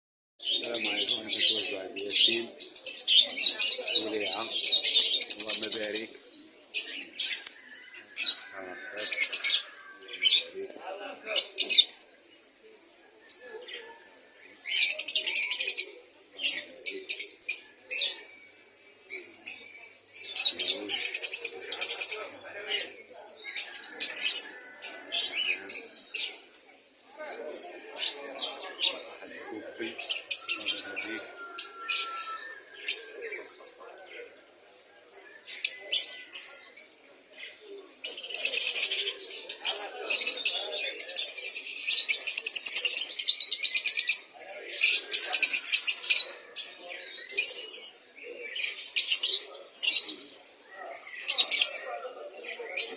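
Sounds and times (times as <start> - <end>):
songbirds trilling and chirping: 0.4 - 52.9.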